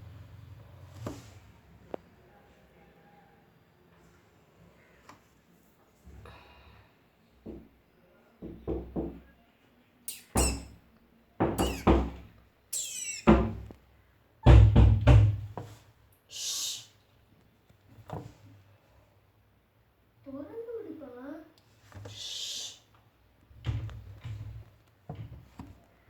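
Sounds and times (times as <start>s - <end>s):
short hissing noise: 10.1s - 10.7s, 12.8s - 13.3s, 22.1s - 22.9s
knocks on washing machine drum: 14.5s - 15.5s.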